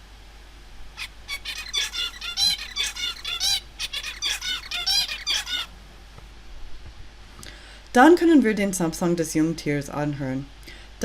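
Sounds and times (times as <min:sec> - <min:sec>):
finch singing: 0:01.0 - 0:05.7.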